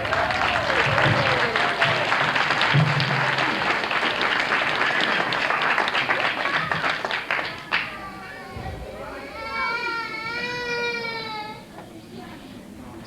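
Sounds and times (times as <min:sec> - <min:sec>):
audience applauding: 0:00.0 - 0:08.5.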